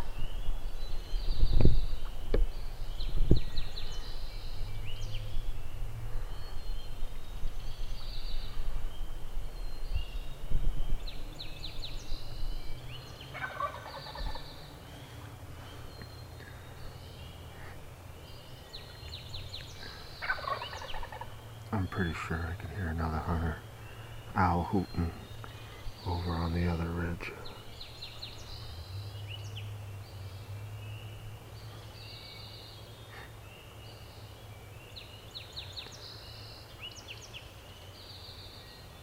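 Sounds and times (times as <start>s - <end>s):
songbirds chirping: 0.0s - 39.0s
turkey gobbling: 13.3s - 14.5s, 20.2s - 21.3s.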